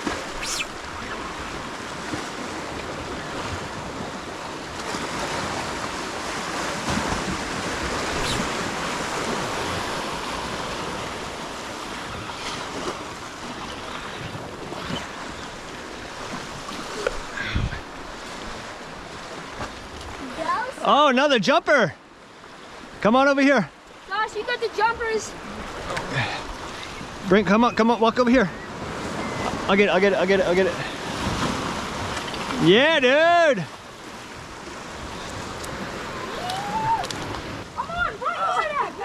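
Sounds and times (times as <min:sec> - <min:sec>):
ocean surf washing in: 0:00.0 - 0:19.6, 0:28.1 - 0:39.0
wind on microphone: 0:06.8 - 0:11.2.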